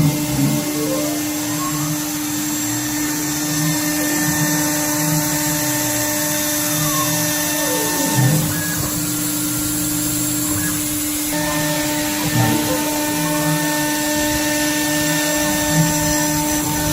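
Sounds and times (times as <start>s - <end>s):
spindle motor whine: 0.0s - 16.9s
tones gliding down in pitch: 0.6s - 9.0s.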